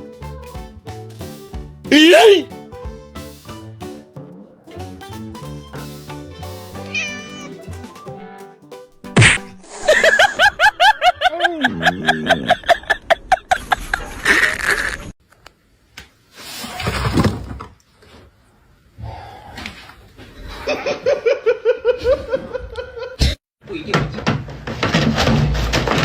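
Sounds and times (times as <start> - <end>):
person laughing high-pitched: 1.9 - 2.5, 9.9 - 13.7
lower voice laughing: 9.9 - 13.8.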